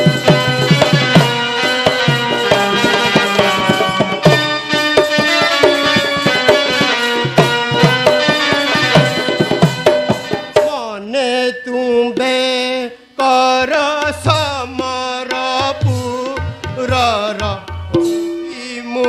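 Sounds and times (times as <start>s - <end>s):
held melody instrument notes: 0.0s - 12.6s
tabla rhythm: 0.0s - 19.0s.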